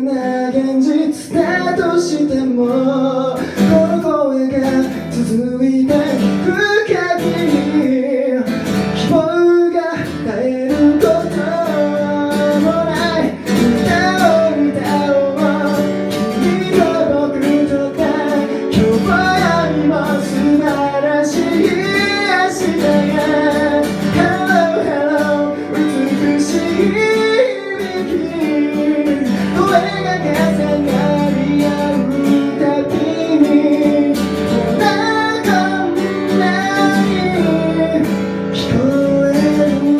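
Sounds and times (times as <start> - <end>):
person singing: 0.0 - 39.9
strummed acoustic guitar: 0.0 - 39.9.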